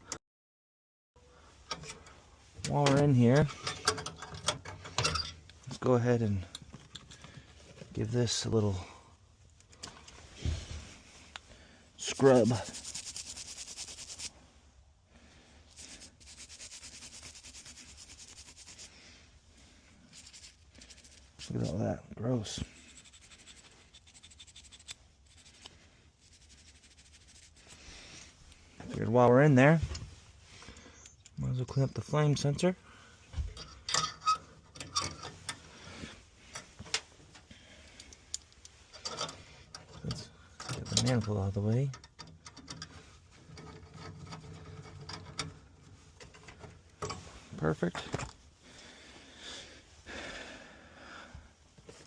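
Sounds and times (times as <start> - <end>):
quick scrubbing strokes: 12.0 - 14.5, 15.7 - 19.0, 20.1 - 21.8, 22.6 - 28.1.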